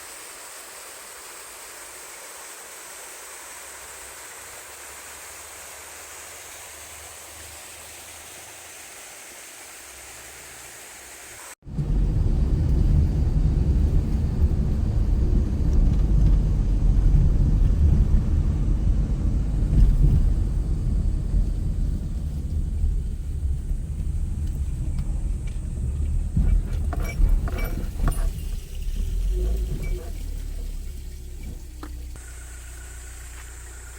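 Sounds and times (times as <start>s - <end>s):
car engine and road rumble: 11.6s - 33.9s.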